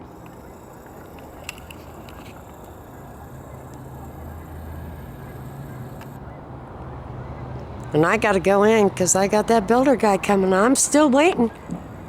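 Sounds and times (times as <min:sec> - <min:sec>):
low engine drone: 0:00.0 - 0:12.0
sharp click: 0:00.1 - 0:02.8.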